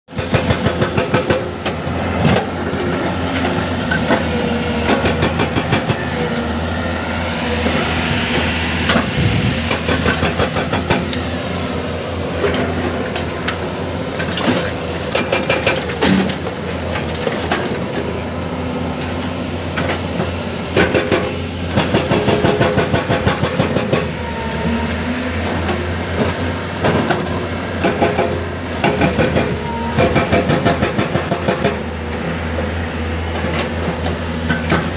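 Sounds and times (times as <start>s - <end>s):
hydraulic breaker hammering rock: 0.1s - 6.3s, 8.4s - 11.3s, 14.3s - 16.5s, 19.8s - 24.2s, 26.8s - 32.0s, 33.4s - 34.9s
diesel engine running: 0.1s - 34.9s.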